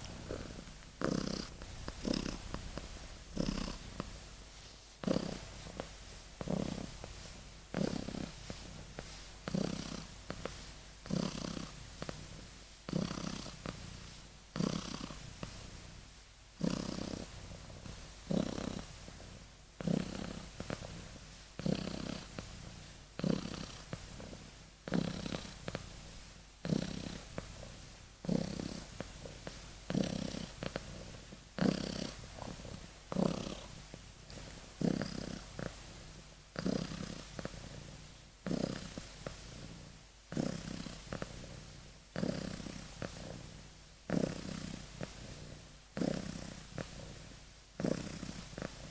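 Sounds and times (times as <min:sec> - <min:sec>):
kitten snoring: 0:00.0 - 0:48.9.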